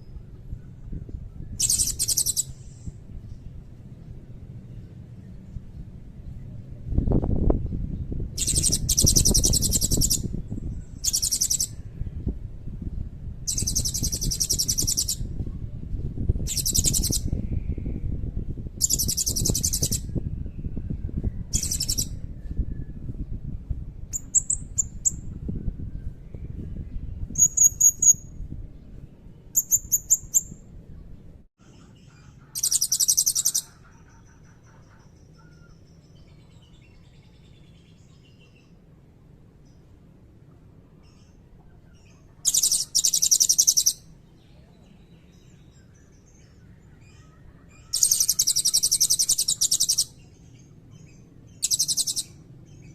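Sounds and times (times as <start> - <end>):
low background rumble: 0.0 - 32.6
parrot buzzy trills and chirps: 1.6 - 2.8, 8.4 - 10.3, 10.9 - 11.8, 13.4 - 15.2, 16.4 - 17.4, 18.8 - 20.1, 21.5 - 22.2, 31.7 - 36.0, 41.1 - 44.1, 46.5 - 52.8.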